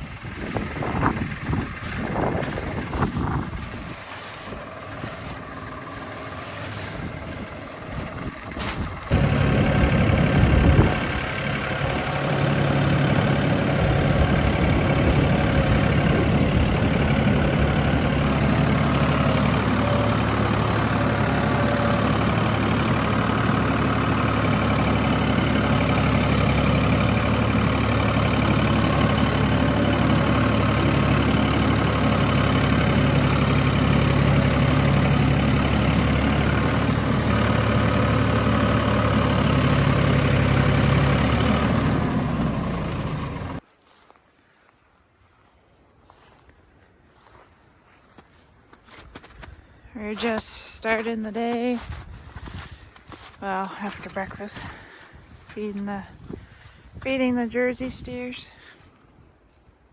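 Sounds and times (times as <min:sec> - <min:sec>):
wind buffeting microphone: 0:00.0 - 0:04.7, 0:07.0 - 0:12.1, 0:13.8 - 0:18.1, 0:51.8 - 0:53.2, 0:56.1 - 0:57.1
engine idling: 0:00.0 - 0:43.6.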